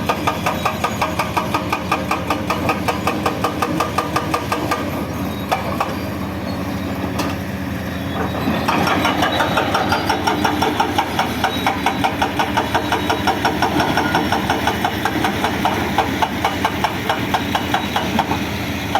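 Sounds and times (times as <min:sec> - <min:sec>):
diesel engine running: 0:00.0 - 0:18.9
hydraulic hammer striking: 0:08.7 - 0:18.5.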